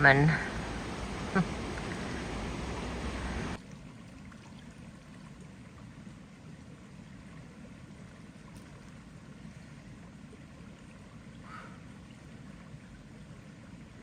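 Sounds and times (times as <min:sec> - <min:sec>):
river water rushing: 0:00.0 - 0:04.7.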